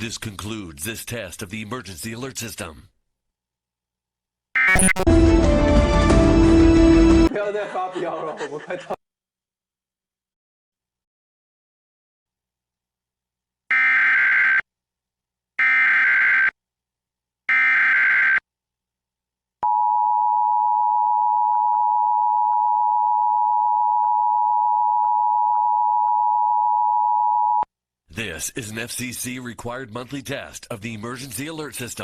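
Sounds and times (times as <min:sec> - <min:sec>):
digital data tone bursts: 0:04.6 - 0:05.1.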